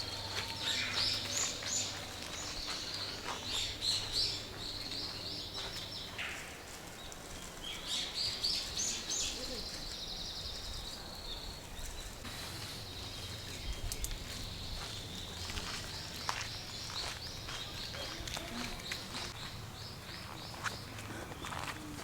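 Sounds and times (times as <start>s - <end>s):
faint outdoor background noise: 0.0s - 22.0s
small bird chirping: 12.8s - 21.7s.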